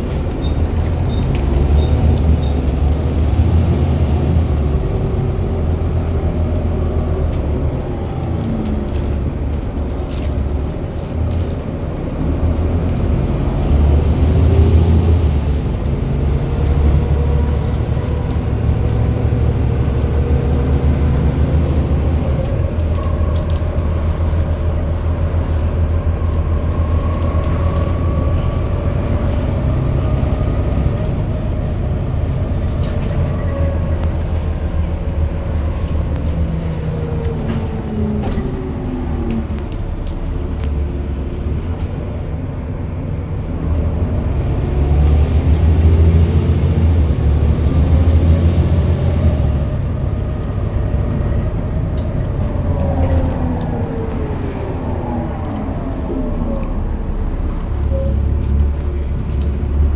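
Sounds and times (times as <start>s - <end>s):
bus engine drone: 0.0s - 59.9s.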